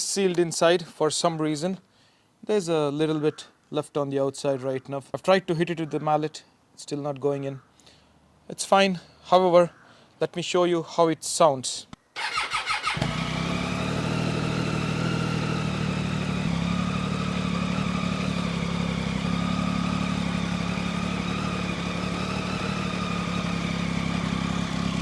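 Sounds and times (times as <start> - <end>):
motorcycle engine idling: 12.2 - 25.0.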